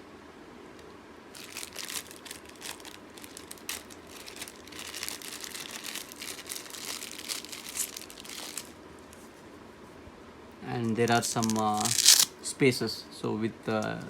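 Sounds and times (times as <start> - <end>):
plastic packaging crinkling: 1.3 - 8.8, 10.8 - 12.3.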